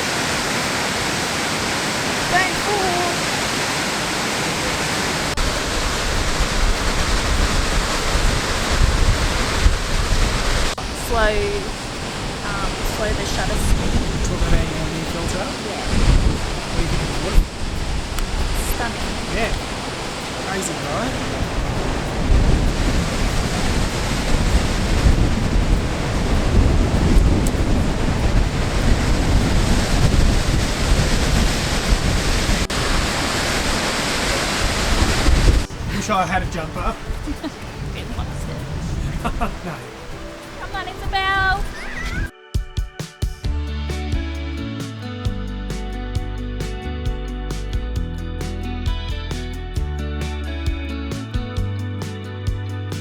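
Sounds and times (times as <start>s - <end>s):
waterfall rushing: 0.0s - 42.3s
wind buffeting microphone: 3.9s - 42.3s.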